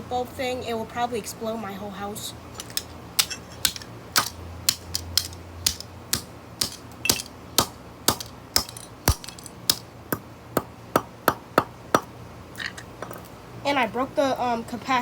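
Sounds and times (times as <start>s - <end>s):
sharp knocks striking capacitor: 3.2s - 12.1s.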